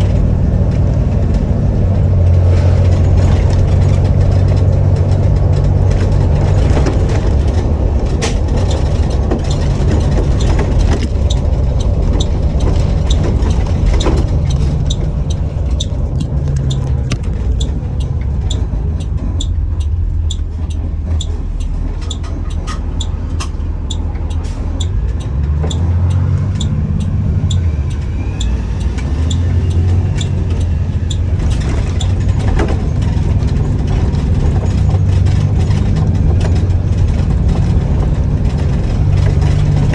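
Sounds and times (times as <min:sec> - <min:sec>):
bus engine idling: 0:00.0 - 0:39.9
regular ticking: 0:00.0 - 0:39.9.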